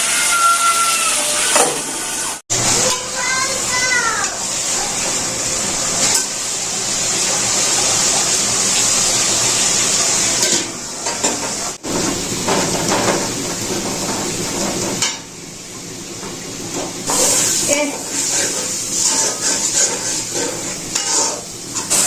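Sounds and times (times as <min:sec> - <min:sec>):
kitchenware clattering: 0:10.4 - 0:15.3.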